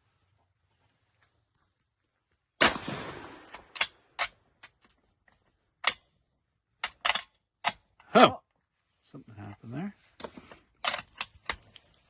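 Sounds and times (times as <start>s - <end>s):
rifle shot: 2.6s - 3.8s.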